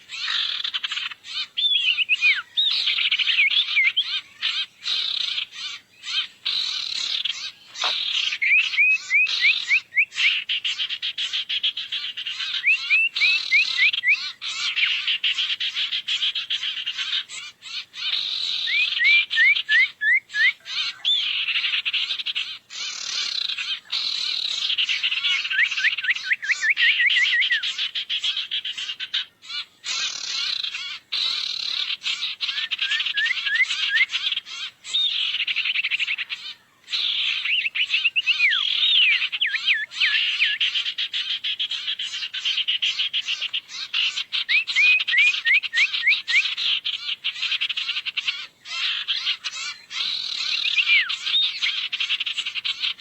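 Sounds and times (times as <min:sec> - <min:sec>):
bird rising chirps: 0:37.0 - 0:40.6, 0:50.2 - 0:51.7.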